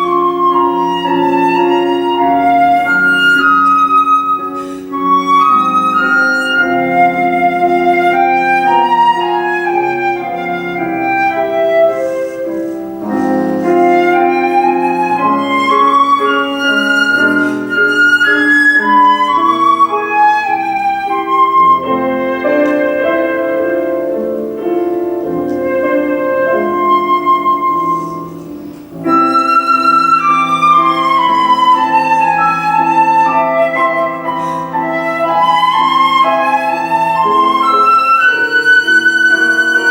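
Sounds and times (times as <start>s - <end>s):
flute melody: 0.0s - 39.9s
piano chords: 0.0s - 39.9s.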